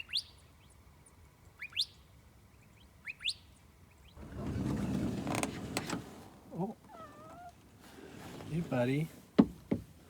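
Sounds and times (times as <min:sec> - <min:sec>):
small bird chirping: 0:00.0 - 0:00.8, 0:01.5 - 0:04.2.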